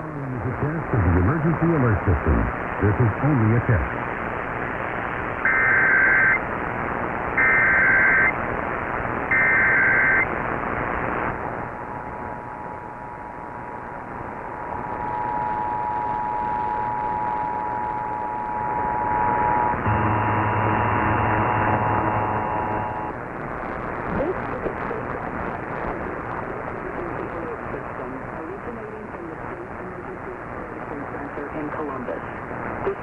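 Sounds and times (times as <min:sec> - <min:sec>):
radio hiss: 0:00.0 - 0:33.0
harsh buzzy tone: 0:00.4 - 0:04.0, 0:14.9 - 0:23.2
two-tone attention signal: 0:19.9 - 0:23.1.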